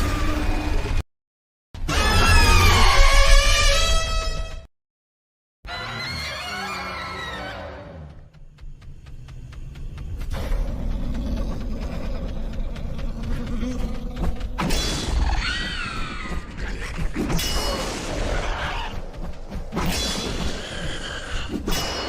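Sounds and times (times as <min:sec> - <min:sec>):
monster shrill screeching cries: 0:01.9 - 0:04.2, 0:05.7 - 0:07.8
monster low rumbling growl: 0:08.6 - 0:19.7.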